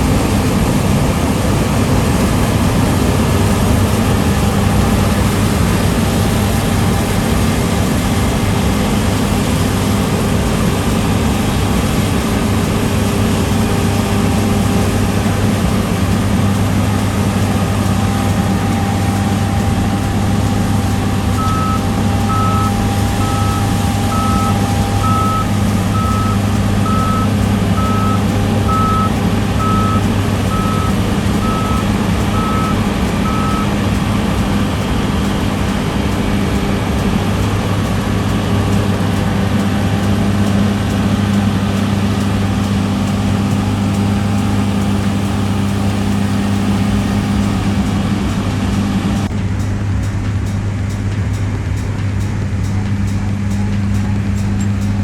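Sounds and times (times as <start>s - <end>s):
heavy farm machinery running: 0.0s - 55.0s
reversing alarm beeping: 13.0s - 37.4s.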